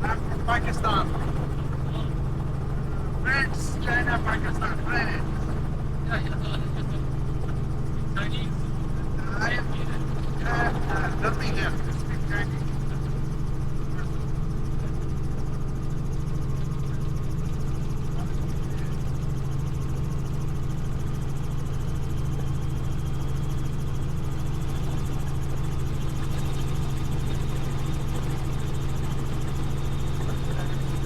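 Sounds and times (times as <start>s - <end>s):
helicopter engine and rotor drone: 0.0s - 31.0s.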